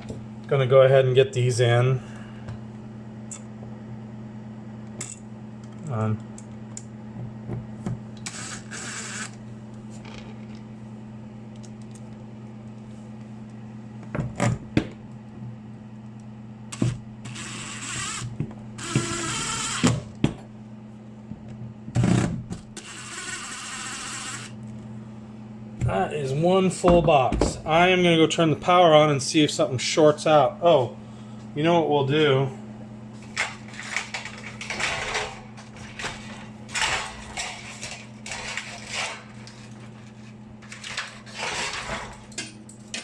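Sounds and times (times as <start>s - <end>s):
steady low hum: 0.0s - 43.0s
wiring rustling scrapes: 33.3s - 42.2s.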